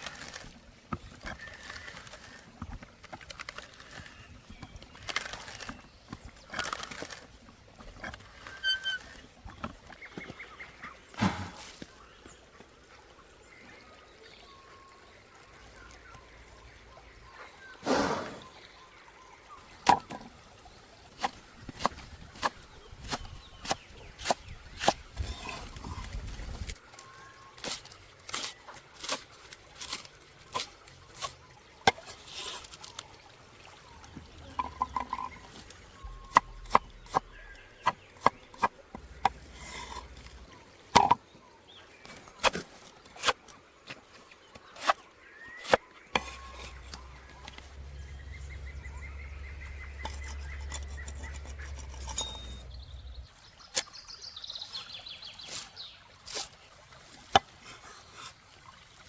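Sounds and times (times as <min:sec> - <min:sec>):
low steady rumble: 0:46.7 - 0:53.3
cooking utensils clinking: 0:49.9 - 0:53.0.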